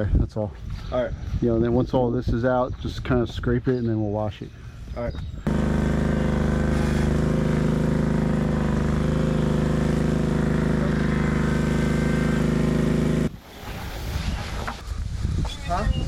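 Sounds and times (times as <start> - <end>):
engine running steadily: 5.5 - 13.3.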